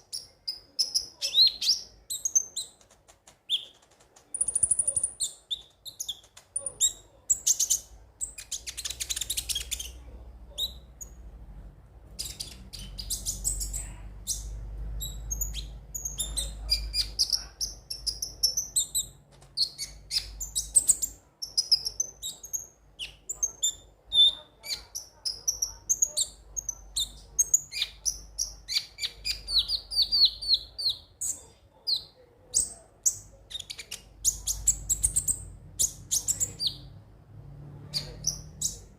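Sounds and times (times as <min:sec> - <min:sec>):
sunbird singing: 0:12.2 - 0:26.4.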